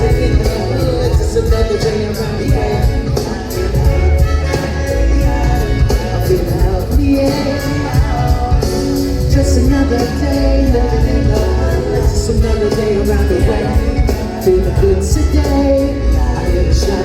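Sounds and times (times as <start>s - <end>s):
person singing: 0.0s - 17.0s.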